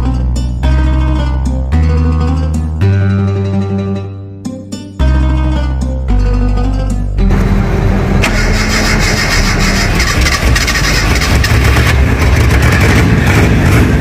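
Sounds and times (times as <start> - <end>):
petrol engine starting and running: 5.0 - 14.0.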